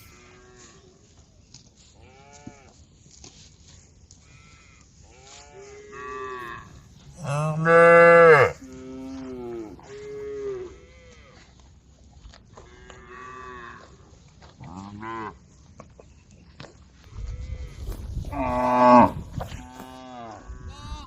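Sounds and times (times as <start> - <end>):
cows mooing: 5.1 - 11.2, 18.3 - 20.7.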